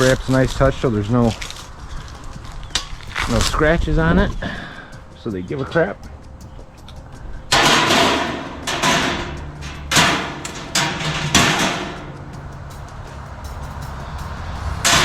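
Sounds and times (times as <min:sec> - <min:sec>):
sheet-metal panels knocking: 0:05.8 - 0:15.0.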